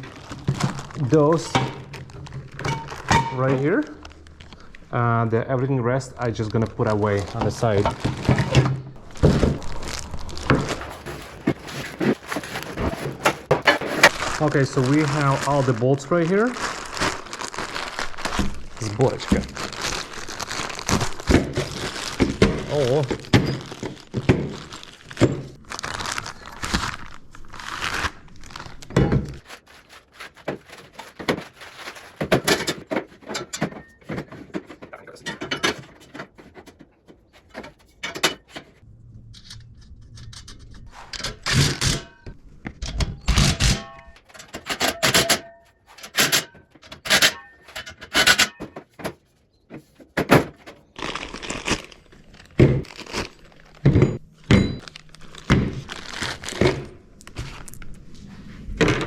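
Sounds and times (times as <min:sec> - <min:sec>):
metal parts knocking and scraping: 0:00.0 - 0:04.0, 0:10.4 - 0:14.5, 0:28.9 - 0:50.9, 0:53.7 - 0:55.7
packaging rustling: 0:00.0 - 0:38.8, 0:43.2 - 0:59.0.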